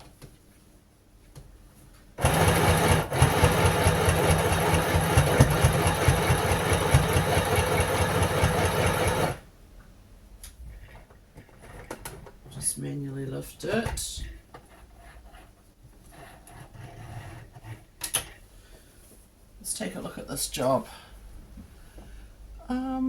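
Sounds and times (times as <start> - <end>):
sewing machine stitching: 2.2 - 9.4.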